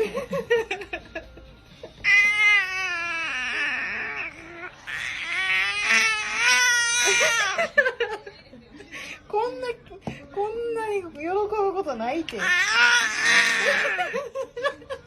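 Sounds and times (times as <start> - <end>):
baby making happy vocalizations: 2.0 - 7.6.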